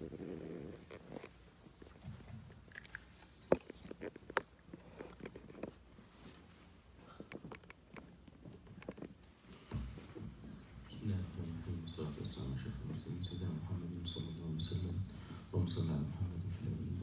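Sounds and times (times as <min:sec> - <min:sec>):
faint clicks and knocks: 0:07.1 - 0:10.3.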